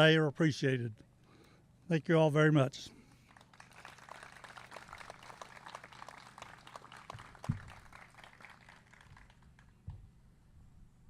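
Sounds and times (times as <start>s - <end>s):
audience applause: 3.3s - 9.7s.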